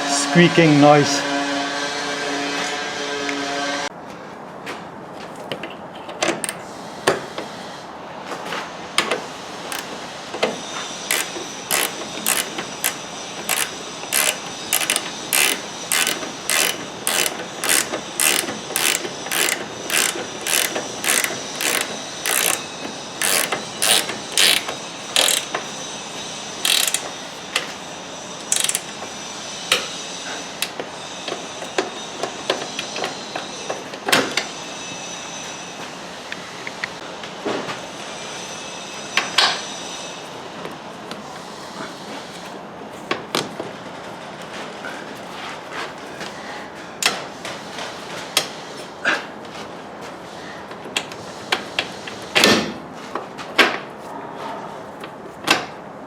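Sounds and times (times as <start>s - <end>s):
ratchet wrench clicking: 9.7s - 9.9s, 11.1s - 25.6s, 26.6s - 27.1s, 28.5s - 28.9s.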